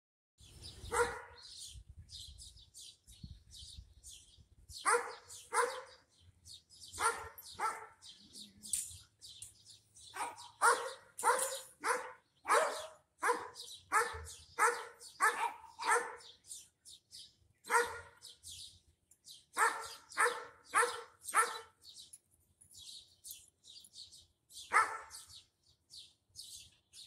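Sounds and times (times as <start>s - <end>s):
small birds chirping: 0.4s - 27.0s
dogs barking: 0.8s - 1.5s, 4.8s - 6.0s, 6.9s - 8.2s, 10.0s - 16.4s, 17.6s - 18.3s, 19.6s - 21.8s, 24.6s - 25.4s.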